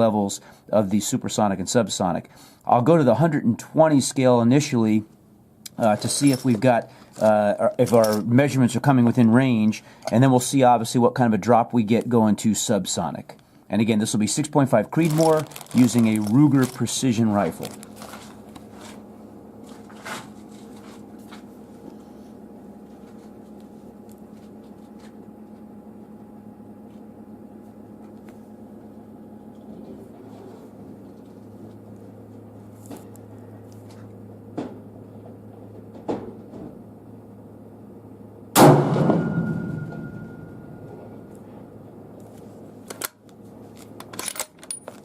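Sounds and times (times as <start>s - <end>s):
steady low hum: 0.0s - 45.0s
rifle shot ringing: 38.6s - 41.0s.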